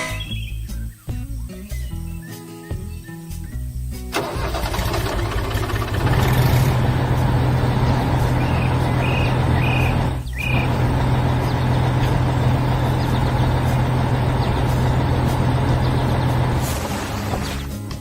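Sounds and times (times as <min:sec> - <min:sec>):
heavy vehicle engine humming: 0:04.1 - 0:17.9.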